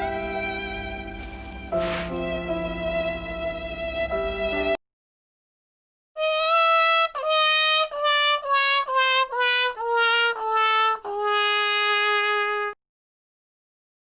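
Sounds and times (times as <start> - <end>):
comic descending brass horn tune: 6.2 - 12.8.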